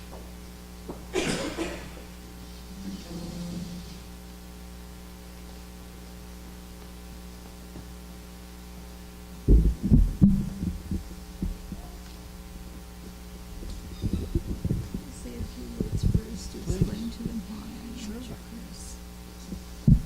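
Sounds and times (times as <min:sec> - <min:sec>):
electrical hum: 0:00.0 - 0:20.0
dull low thumps: 0:09.4 - 0:17.6, 0:19.5 - 0:20.0.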